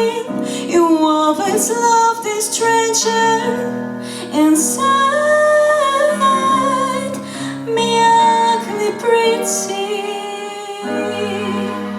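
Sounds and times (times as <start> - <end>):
woman singing with vibrato: 0.0 - 11.9.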